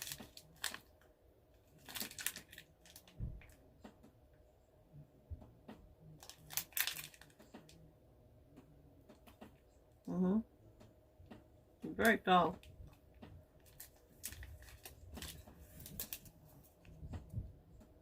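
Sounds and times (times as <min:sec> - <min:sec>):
chocolate bar crunching: 0:00.0 - 0:01.0, 0:01.6 - 0:03.1, 0:06.2 - 0:07.7
wrapper crinkling: 0:00.0 - 0:01.0, 0:01.6 - 0:03.2, 0:06.2 - 0:07.5, 0:13.6 - 0:16.8.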